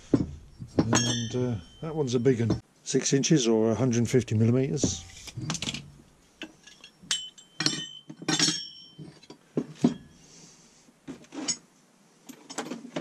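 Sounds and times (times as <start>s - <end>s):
metal hole cutters clinking: 0.0s - 2.6s, 4.8s - 10.1s.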